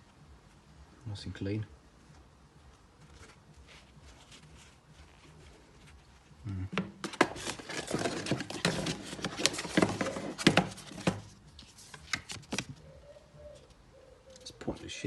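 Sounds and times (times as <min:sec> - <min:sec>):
hands handling packaging: 0:07.0 - 0:12.9.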